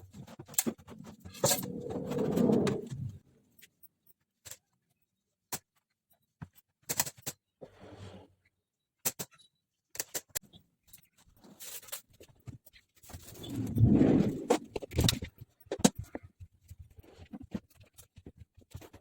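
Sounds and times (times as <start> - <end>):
scraping rustle: 0.7 - 3.2.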